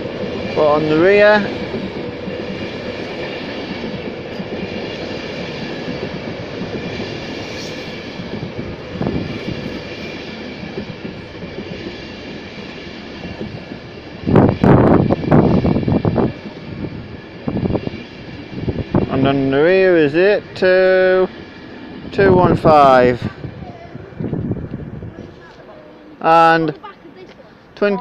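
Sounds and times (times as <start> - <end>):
train rumbling slowly: 0.0 - 28.0.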